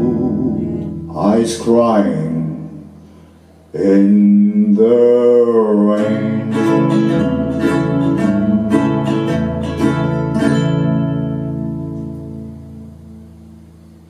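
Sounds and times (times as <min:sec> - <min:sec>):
ukuleles strumming chords: 0:06.0 - 0:13.2.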